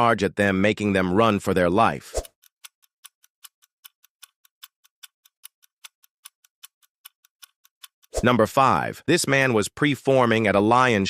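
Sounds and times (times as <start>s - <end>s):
rapid even ticking: 2.1s - 8.4s.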